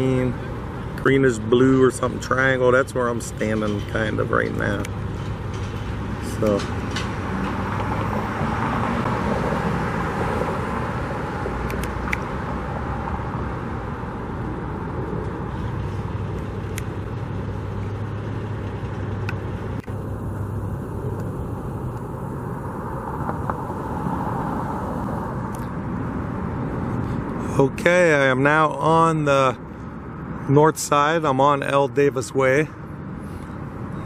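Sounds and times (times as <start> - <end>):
road traffic hum: 0.0 - 34.0
constant droning tone: 10.6 - 34.0.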